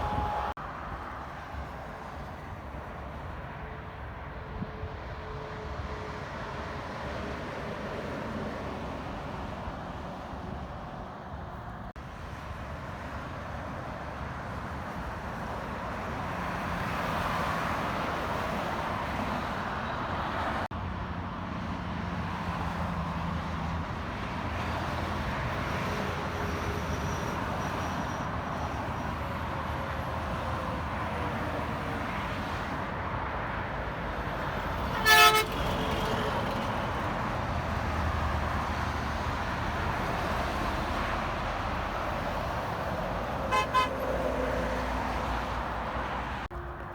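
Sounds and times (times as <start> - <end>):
vehicle horn toot: 0.0 - 0.6, 34.9 - 35.7, 43.5 - 44.1
road traffic passing: 0.0 - 46.9.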